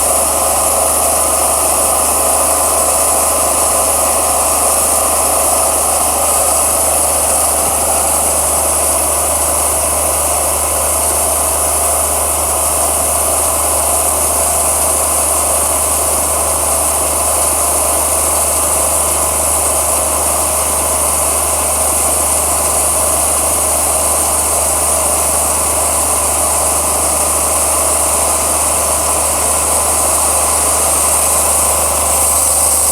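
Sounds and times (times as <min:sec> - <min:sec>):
diesel engine hum: 0:00.0 - 0:19.8
band saw blade whine: 0:00.0 - 0:32.9.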